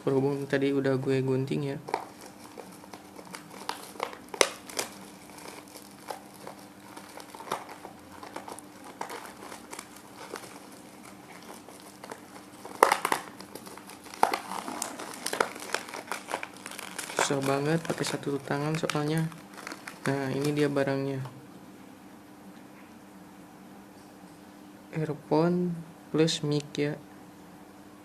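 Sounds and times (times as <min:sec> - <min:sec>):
crinkly packaging rustling: 0:01.5 - 0:20.9.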